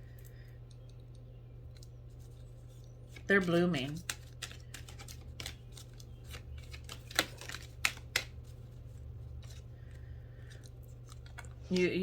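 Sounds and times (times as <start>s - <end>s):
low steady hum: 0.0s - 12.0s
cards clicking and tapping on table: 3.9s - 8.4s
sharp card snaps: 3.9s - 8.4s.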